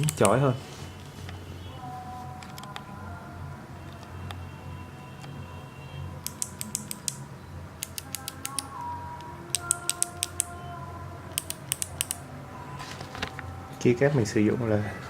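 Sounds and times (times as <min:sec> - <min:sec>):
mechanical keyboard clicks: 0:00.0 - 0:00.4, 0:06.2 - 0:07.2, 0:07.8 - 0:08.8, 0:09.5 - 0:10.5, 0:11.3 - 0:12.2.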